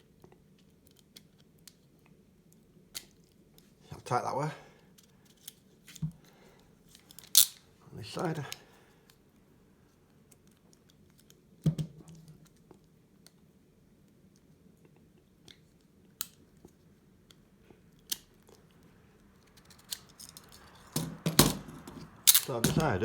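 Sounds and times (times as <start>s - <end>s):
shim scraping in handcuffs: 19.4s - 21.0s, 21.6s - 23.0s
handcuff clicks: 22.2s - 22.9s.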